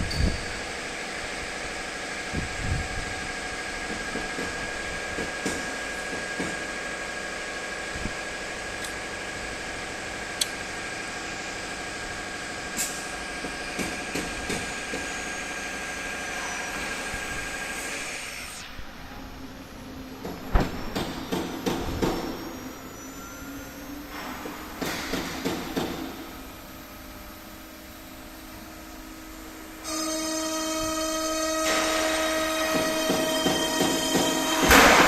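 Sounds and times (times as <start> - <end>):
router spindle whine: 9.6 - 24.7, 26.3 - 35.0.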